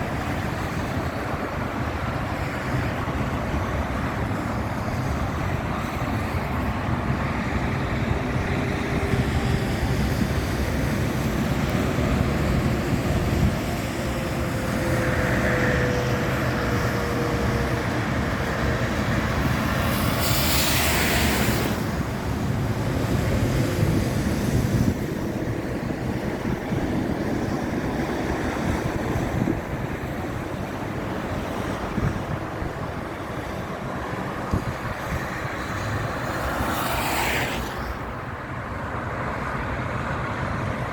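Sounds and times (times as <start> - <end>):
wind and rain rushing: 0.0 - 40.9.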